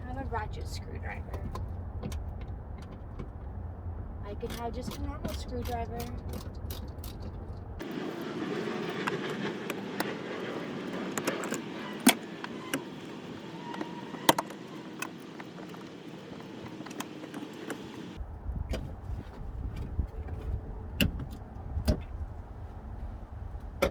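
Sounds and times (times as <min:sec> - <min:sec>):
loose metal parts clinking: 0:04.4 - 0:07.8.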